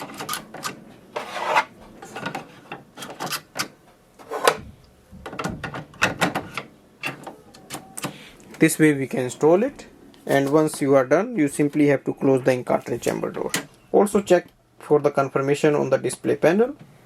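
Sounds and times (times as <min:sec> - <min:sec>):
plastic scraping on plastic: 0:00.0 - 0:04.7.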